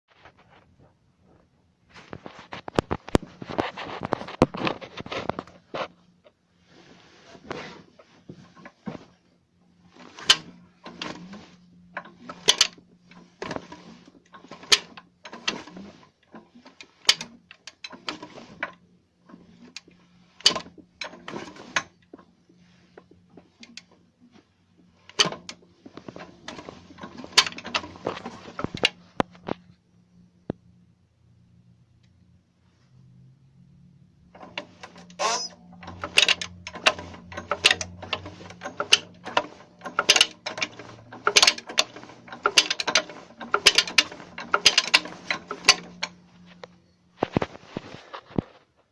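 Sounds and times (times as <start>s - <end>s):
sharp engine knocks and rattles: 34.3s - 46.6s.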